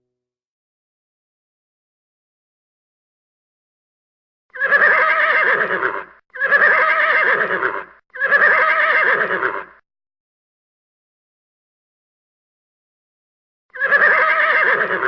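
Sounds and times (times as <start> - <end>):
horse whinnying: 4.5 - 9.8, 13.7 - 15.0.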